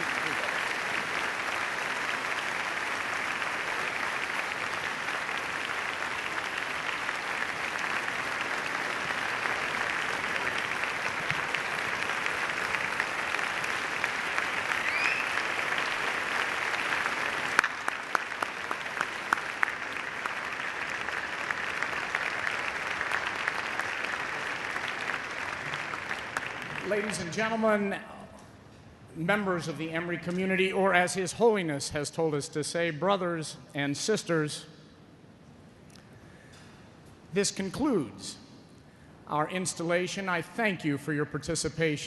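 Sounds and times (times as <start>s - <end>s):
large audience applauding: 0.0s - 27.6s.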